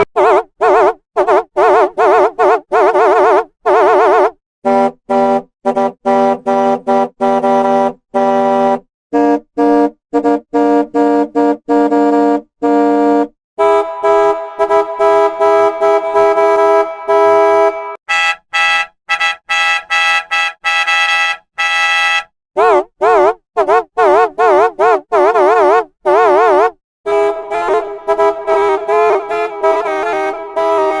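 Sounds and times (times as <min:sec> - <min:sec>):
bus air horn blasts: 0:13.6 - 0:22.3, 0:27.1 - 0:30.6.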